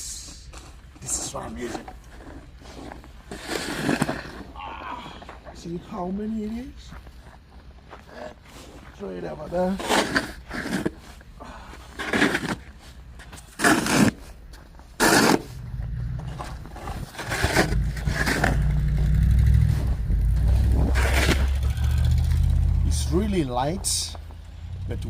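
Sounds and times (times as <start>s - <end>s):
snow shovel scraping pavement: 1.0s - 4.5s, 9.5s - 11.2s, 11.8s - 14.4s, 15.0s - 15.6s, 16.3s - 19.1s, 19.7s - 22.1s
vehicle engine rumbling: 15.5s - 25.0s.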